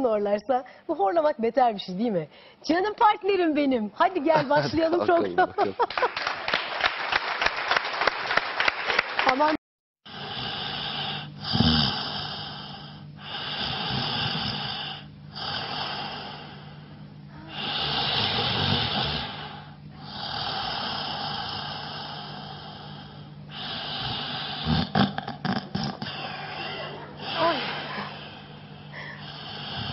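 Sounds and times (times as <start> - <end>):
man snoring: 10.1 - 29.9.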